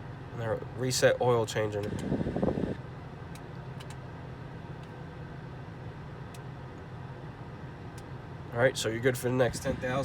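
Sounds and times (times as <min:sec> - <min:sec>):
car engine idling: 0:07.3 - 0:10.0.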